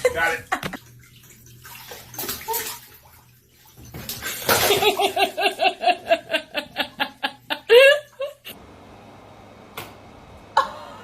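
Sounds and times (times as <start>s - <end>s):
water sloshing and splashing: 0.0s - 5.4s
high laughter: 4.7s - 8.6s.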